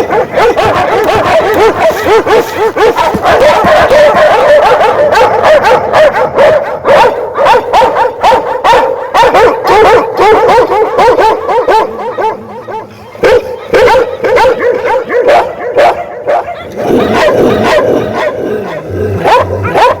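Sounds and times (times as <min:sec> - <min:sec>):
dog barking: 0:00.0 - 0:20.0.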